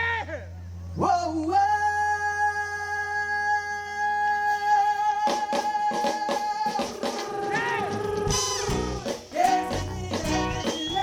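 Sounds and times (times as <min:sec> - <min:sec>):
soul band long held note: 0:01.0 - 0:11.0
drum hits: 0:05.3 - 0:11.0.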